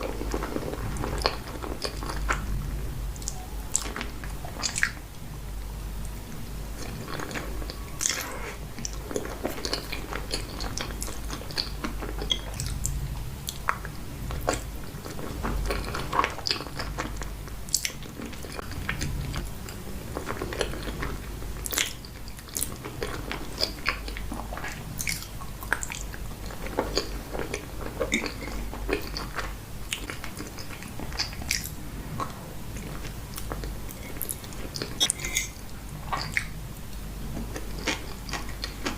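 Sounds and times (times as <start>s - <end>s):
chewing pasta: 0.0s - 5.2s, 6.1s - 38.9s.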